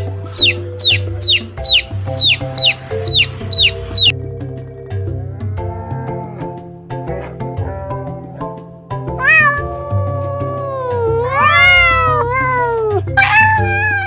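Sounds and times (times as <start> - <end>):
background music: 0.0 - 14.0
cat meowing: 0.3 - 4.1, 9.2 - 14.0.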